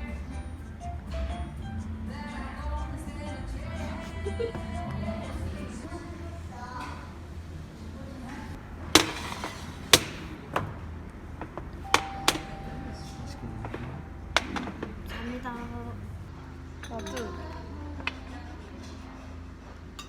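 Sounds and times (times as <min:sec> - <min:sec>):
dishes and cutlery clinking: 0:09.0 - 0:10.4, 0:11.8 - 0:15.4, 0:16.8 - 0:19.4
thin ringing tone: 0:11.8 - 0:15.6.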